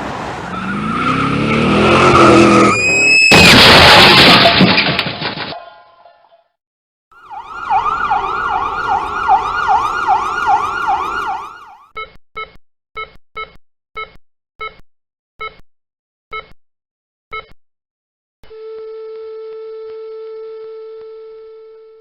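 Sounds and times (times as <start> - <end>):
emergency vehicle siren yelping: 0.5 - 3.3, 7.2 - 11.9.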